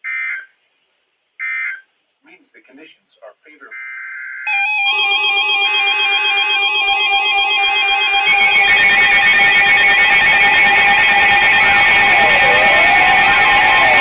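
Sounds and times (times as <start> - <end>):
two-tone alarm warbling: 3.7 - 14.0.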